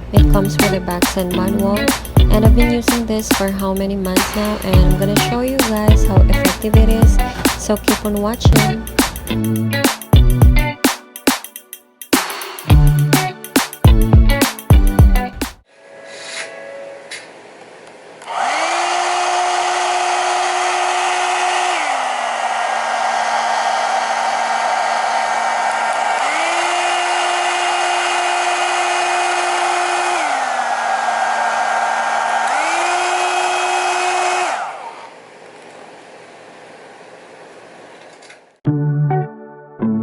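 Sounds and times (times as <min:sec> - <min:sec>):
hot-air dryer brush running: 0:18.2 - 0:21.7, 0:26.1 - 0:30.6, 0:32.4 - 0:35.2.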